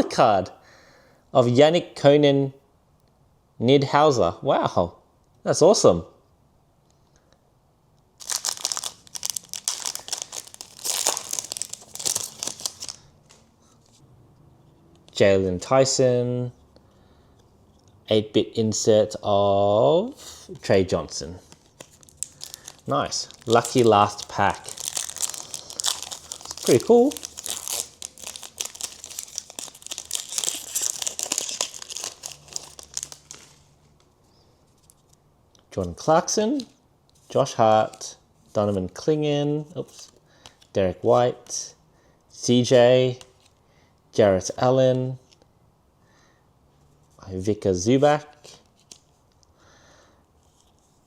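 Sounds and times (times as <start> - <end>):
plastic packaging crinkling: 8.2 - 13.4, 21.5 - 33.7.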